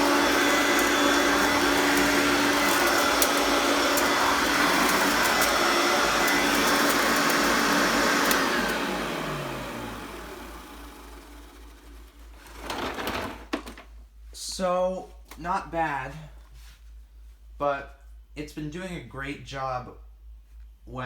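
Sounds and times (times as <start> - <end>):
vacuum motor winding down: 0.0 - 12.8
vacuum cleaner running: 0.0 - 13.3.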